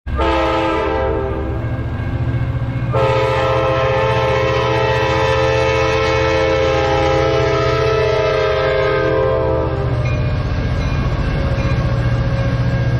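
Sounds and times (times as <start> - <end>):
train air horn: 0.1 - 1.7, 2.9 - 10.1
train rumble: 0.1 - 12.9.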